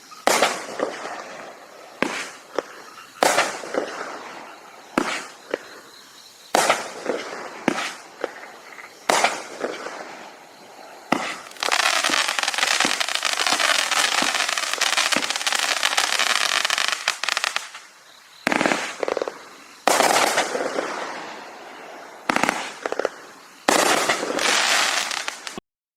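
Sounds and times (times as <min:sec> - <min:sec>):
fireworks bursts: 0:00.0 - 0:25.6
fireworks crackling: 0:00.0 - 0:25.6.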